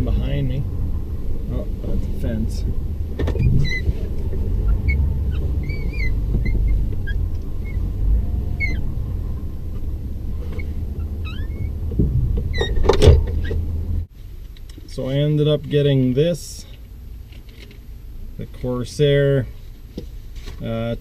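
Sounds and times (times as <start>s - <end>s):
road noise: 0.0s - 21.0s
truck engine rumble: 0.0s - 21.0s
faint high squeaks: 3.4s - 4.0s, 4.6s - 8.9s, 10.4s - 11.8s.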